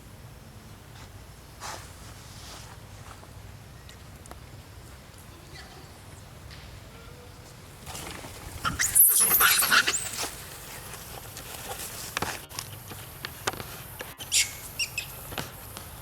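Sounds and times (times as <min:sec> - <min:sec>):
monkeys squeaking: 0:08.5 - 0:10.5, 0:14.2 - 0:15.2
monkeys screeching: 0:08.6 - 0:10.4, 0:14.2 - 0:15.2.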